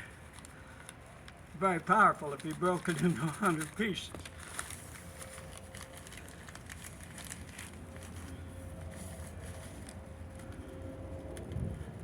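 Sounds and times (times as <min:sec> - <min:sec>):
tinder crackling and rustling: 0:00.0 - 0:12.0
low steady rumble: 0:04.2 - 0:12.0.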